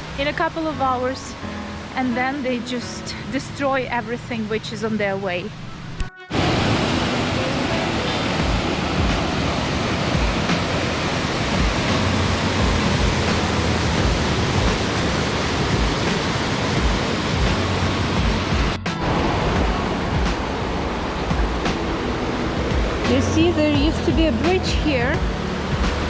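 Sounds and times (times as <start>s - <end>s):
river water rushing: 0.0s - 4.8s, 6.3s - 26.0s
low thumps: 8.1s - 14.9s, 16.8s - 26.0s.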